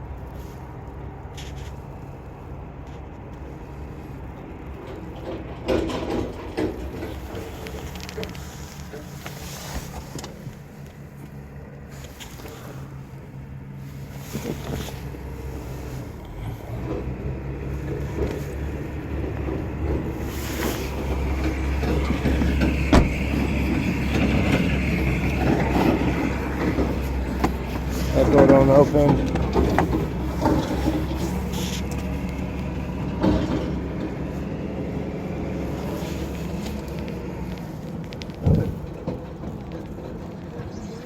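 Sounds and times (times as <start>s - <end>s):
vehicle engine running: 0.0s - 41.0s.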